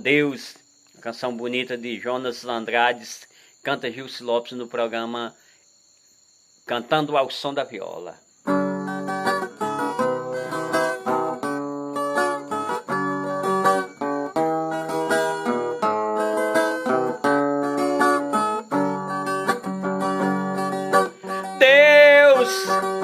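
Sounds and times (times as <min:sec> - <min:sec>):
plucked and strummed guitar: 0:08.5 - 0:23.0.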